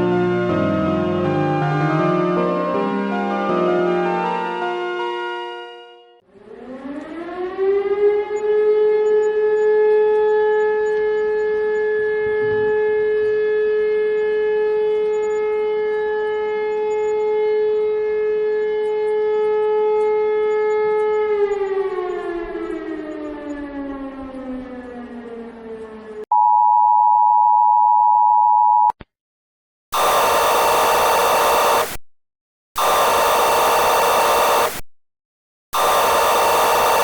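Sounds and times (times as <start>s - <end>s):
civil defense siren: 0.0s - 26.3s, 35.8s - 37.0s.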